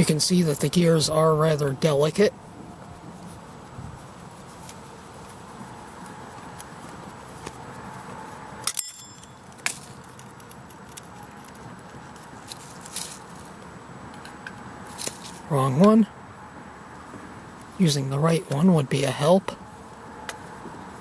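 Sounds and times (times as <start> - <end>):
steady hiss: 0.0 - 8.4.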